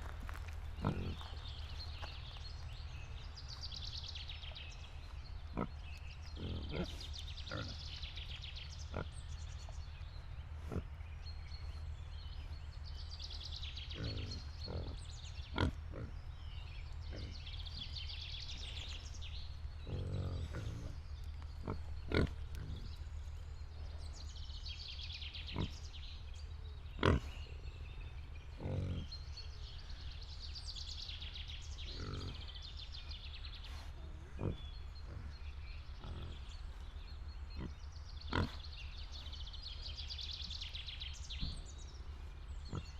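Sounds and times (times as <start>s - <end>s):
pigs grunting: 0.7s - 1.4s, 5.5s - 8.0s, 8.8s - 9.2s, 10.6s - 11.0s, 13.8s - 16.2s, 19.8s - 23.0s, 25.4s - 25.9s, 26.9s - 27.6s, 28.5s - 29.3s, 31.8s - 32.6s, 33.7s - 39.3s, 41.3s - 42.9s.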